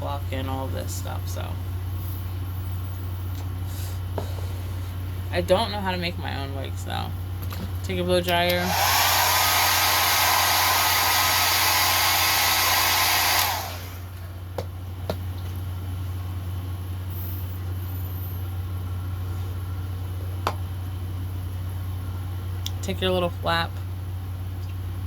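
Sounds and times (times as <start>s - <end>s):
low steady hum: 0.0s - 25.0s
hair dryer blowing: 8.5s - 14.2s.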